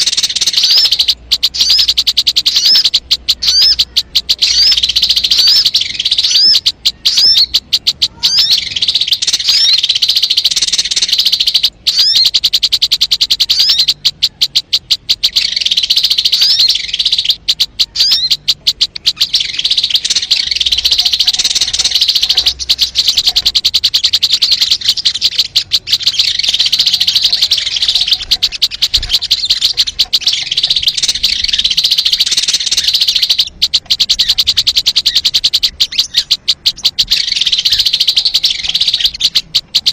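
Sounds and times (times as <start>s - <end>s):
upswept bird whistles: 0.0s - 39.9s
bird rattling chatter: 19.0s - 39.9s.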